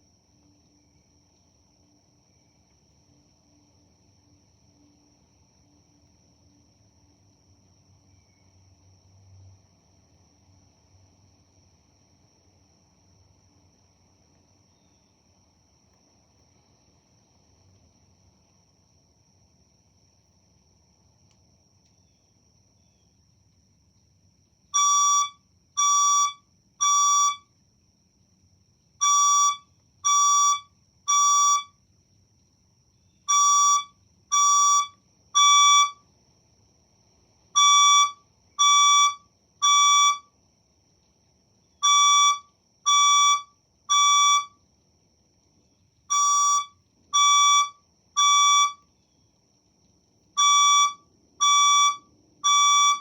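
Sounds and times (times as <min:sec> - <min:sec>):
fire alarm beeps: 0:24.8 - 0:27.5, 0:29.0 - 0:31.8, 0:33.3 - 0:36.0, 0:37.6 - 0:40.3, 0:41.8 - 0:44.6, 0:46.1 - 0:48.8, 0:50.4 - 0:53.0.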